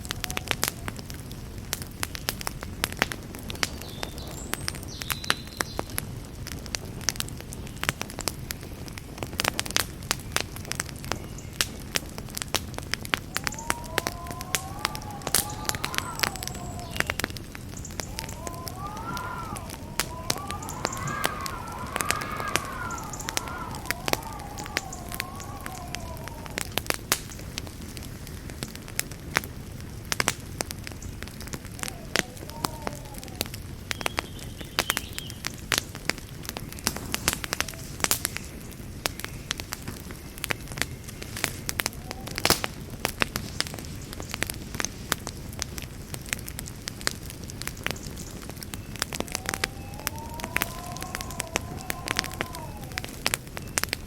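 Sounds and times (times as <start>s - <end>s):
campfire crackling and popping: 0.0s - 54.0s
wavering whistle: 13.3s - 26.9s, 31.8s - 33.6s, 49.0s - 53.4s.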